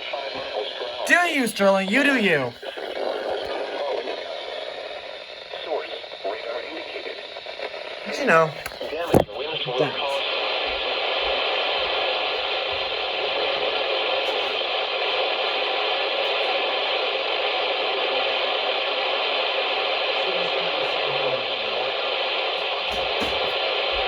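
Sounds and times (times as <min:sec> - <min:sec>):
radio static hiss: 0:01.0 - 0:04.7, 0:05.5 - 0:10.3.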